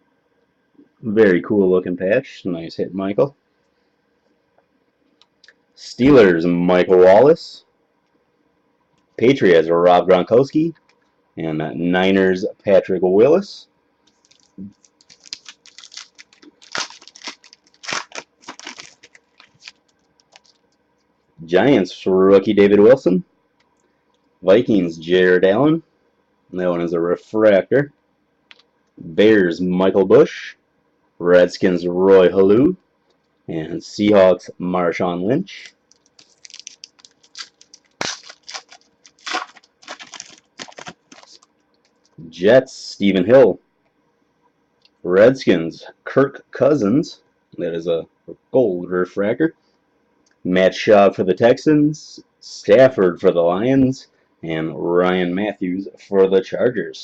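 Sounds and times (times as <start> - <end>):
card packaging crinkling: 14.1 - 20.8, 35.5 - 42.2.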